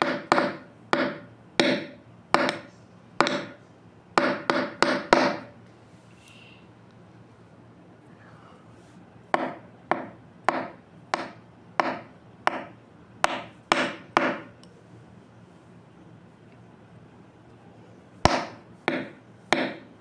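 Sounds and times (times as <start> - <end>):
sharp knocks on hard surface: 9.4 - 12.7, 13.3 - 14.5, 18.3 - 19.9.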